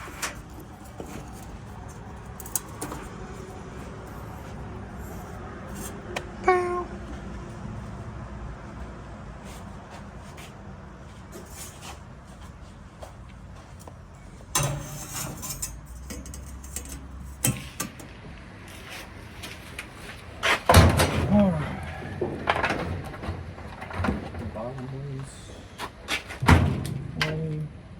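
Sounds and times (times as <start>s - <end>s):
sheet metal panels clanking: 14.5s - 18.1s.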